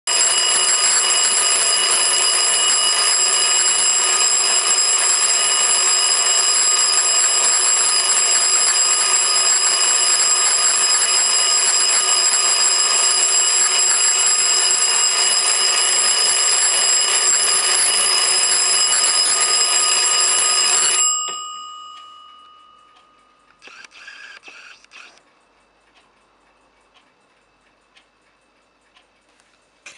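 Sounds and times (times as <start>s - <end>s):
alarm clock bells ringing: 0.1s - 23.5s.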